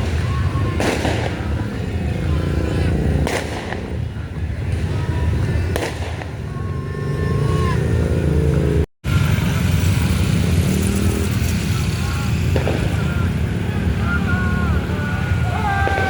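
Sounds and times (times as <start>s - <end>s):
firecracker bangs: 0.0s - 1.8s, 3.2s - 6.4s, 12.4s - 13.4s, 15.6s - 16.0s
bus engines rumbling: 0.0s - 16.0s.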